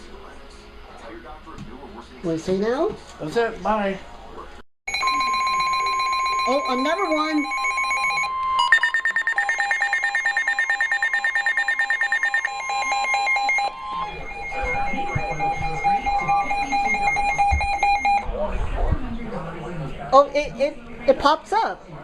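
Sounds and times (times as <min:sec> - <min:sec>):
fast alarm beeping: 0:04.9 - 0:18.3
lower steady alert tone: 0:04.9 - 0:18.3
steady alert tone: 0:04.9 - 0:18.3.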